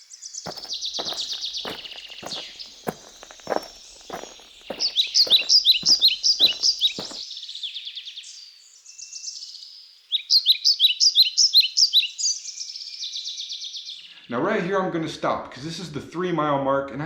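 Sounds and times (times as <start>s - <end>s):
bird singing high chirps: 0.5s - 7.2s
footsteps on dirt trail: 0.5s - 7.2s.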